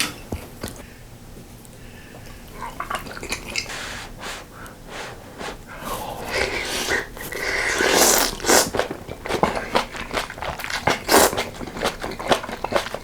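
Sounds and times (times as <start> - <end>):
wet chewing: 1.6 - 13.0
loud noodle slurp: 2.6 - 13.0
short sucking noises: 3.6 - 8.7.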